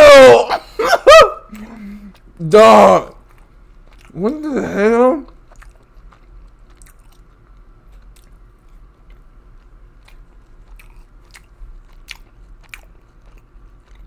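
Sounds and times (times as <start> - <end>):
chewing crispy fried chicken: 1.1 - 14.0.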